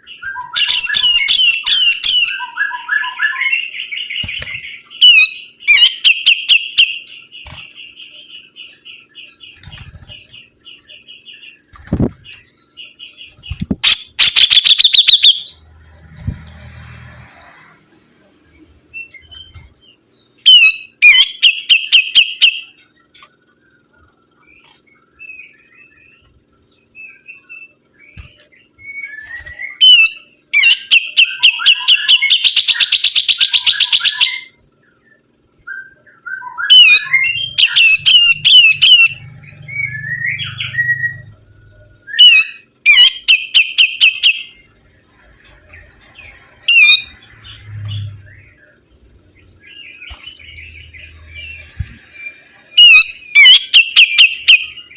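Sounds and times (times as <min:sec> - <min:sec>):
bird trill: 0:00.0 - 0:15.8, 0:18.8 - 0:54.9
songbird chirping: 0:00.0 - 0:54.9
bird call notes: 0:12.3 - 0:15.6, 0:49.6 - 0:54.9.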